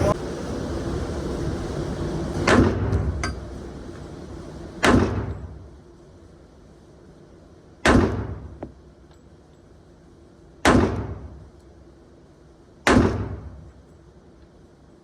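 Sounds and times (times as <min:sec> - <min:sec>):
pistol shots: 0:07.8 - 0:08.5, 0:10.6 - 0:11.3, 0:12.9 - 0:13.4.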